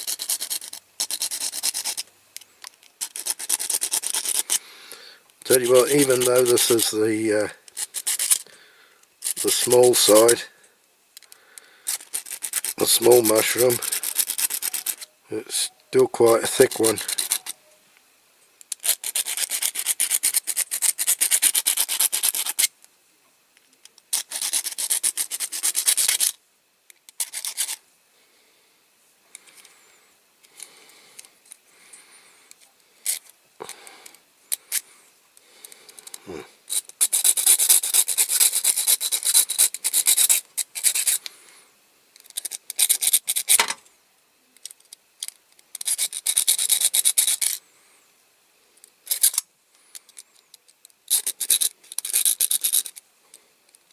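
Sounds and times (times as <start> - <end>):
hand file rasping on metal: 0.0 - 2.0, 3.0 - 4.6, 5.5 - 7.1, 9.2 - 10.4, 11.9 - 15.0, 16.4 - 17.5.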